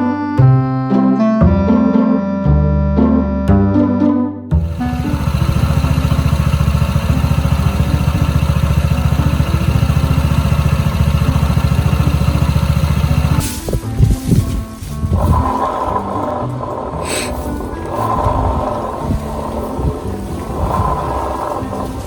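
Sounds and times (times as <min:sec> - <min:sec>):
scooter engine idling: 0:04.5 - 0:22.0.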